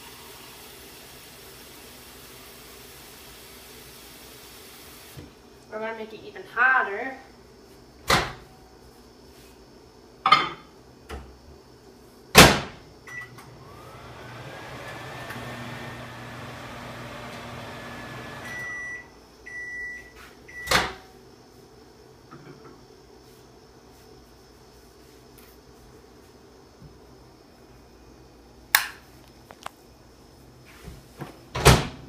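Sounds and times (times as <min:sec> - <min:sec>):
microwave oven humming: 0:13.0 - 0:21.2
microwave beeps: 0:13.1 - 0:13.5, 0:18.3 - 0:21.0.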